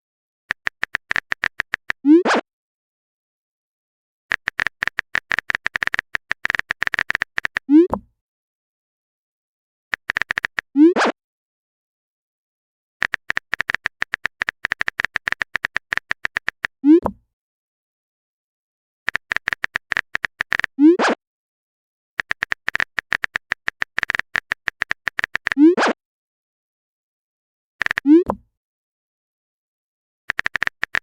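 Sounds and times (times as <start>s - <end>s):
phone keyboard typing clicks: 0.5s - 2.0s, 4.3s - 8.1s, 9.9s - 10.7s, 13.0s - 17.2s, 19.1s - 20.7s, 22.2s - 25.6s, 27.8s - 28.4s, 30.3s - 31.0s.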